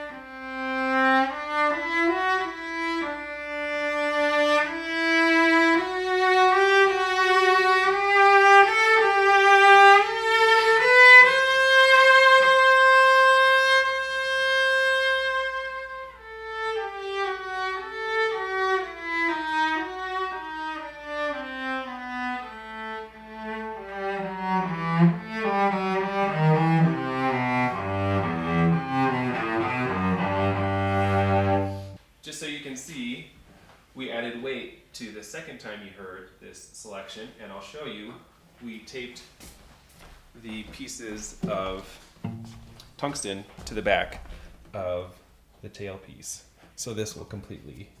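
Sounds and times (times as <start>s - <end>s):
solo violin melody: 0.0s - 32.0s.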